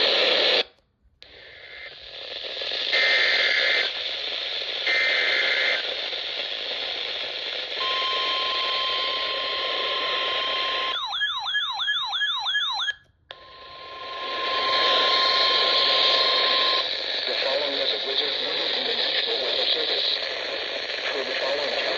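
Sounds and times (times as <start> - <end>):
radio receiver hiss: 0.0 - 10.9, 13.4 - 21.9
steady warning alarm tone: 7.8 - 16.8.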